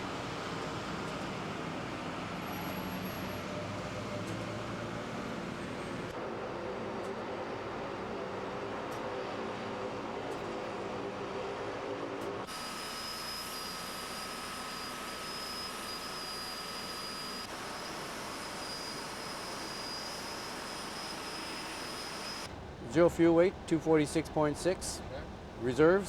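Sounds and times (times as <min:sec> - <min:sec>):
thin high whines: 0:12.5 - 0:22.5
aircraft cockpit hiss: 0:12.5 - 0:26.0.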